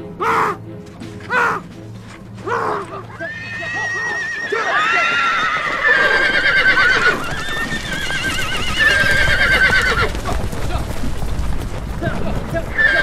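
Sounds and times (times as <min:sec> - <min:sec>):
clatter of hooves: 0:00.8 - 0:13.0
horses whinnying: 0:02.4 - 0:11.0, 0:12.0 - 0:13.0.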